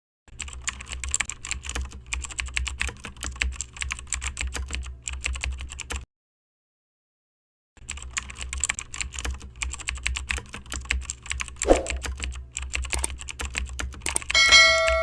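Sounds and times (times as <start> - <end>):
keyboard typing clicks: 7.9 - 15.0.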